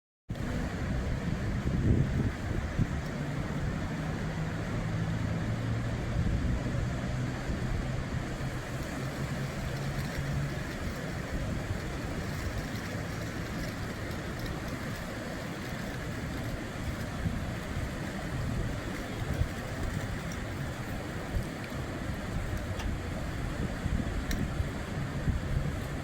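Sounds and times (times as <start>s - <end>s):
constant noisy hiss: 0.3s - 26.0s.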